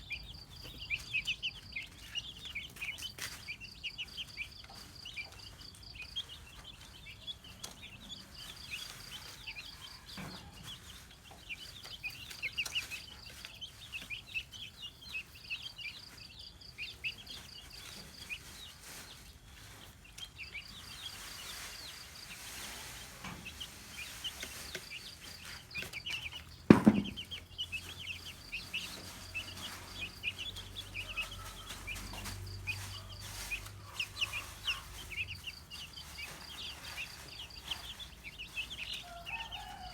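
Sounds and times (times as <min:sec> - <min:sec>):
chicks peeping: 0:00.0 - 0:39.9
loud thump: 0:26.7 - 0:27.4.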